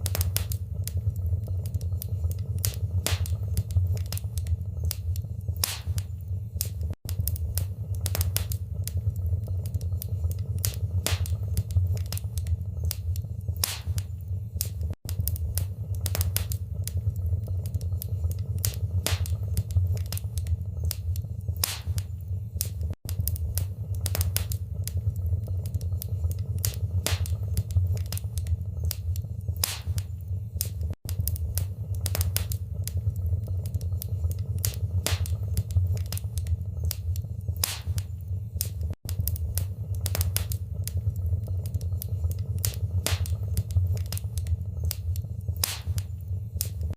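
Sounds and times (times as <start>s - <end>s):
fire low rumble: 0.0s - 46.9s
wood fire crackling and popping: 0.0s - 46.9s.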